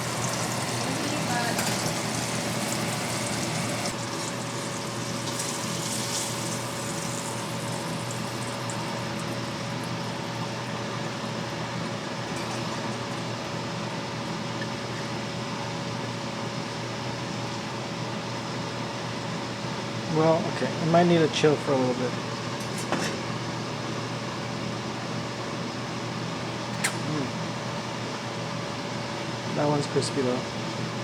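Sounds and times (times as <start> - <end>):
sizzling in a pan: 0.0 - 10.6
fan noise: 0.0 - 31.0.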